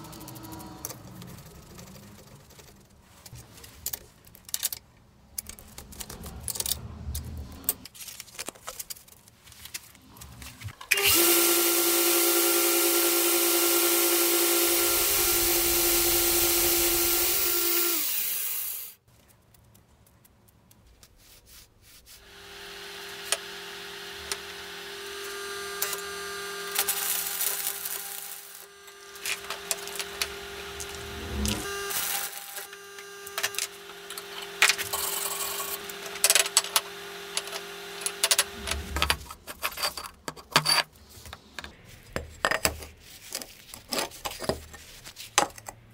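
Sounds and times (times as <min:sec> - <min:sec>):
loud electric power tool: 0:10.9 - 0:19.0, 0:22.2 - 0:39.3
quieter power tool scraping: 0:10.9 - 0:19.0, 0:22.2 - 0:40.0.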